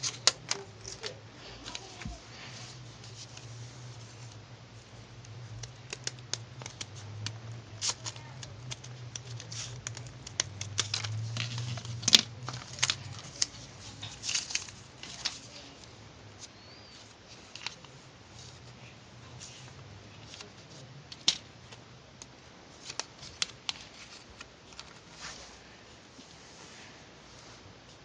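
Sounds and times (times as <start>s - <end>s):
scissors snipping paper: 0.0s - 1.9s, 5.2s - 15.6s
paper being handled: 0.0s - 18.7s
low steady hum: 0.0s - 28.0s.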